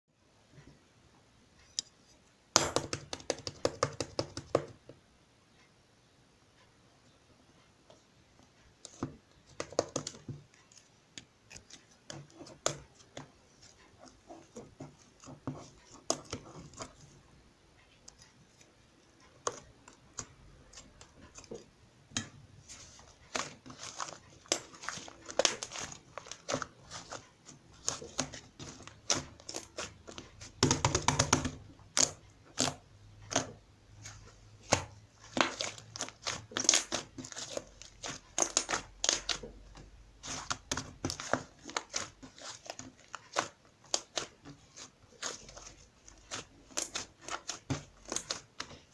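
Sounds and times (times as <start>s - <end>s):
slime squishing and crackling: 22.7s - 48.9s.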